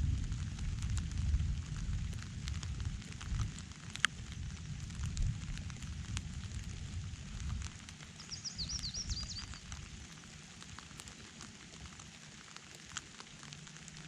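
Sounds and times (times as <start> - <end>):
thunder rumbling: 0.0 - 7.9
rain drips ticking: 0.0 - 14.0
rain falling: 0.0 - 14.0
bird chirping: 8.2 - 9.7.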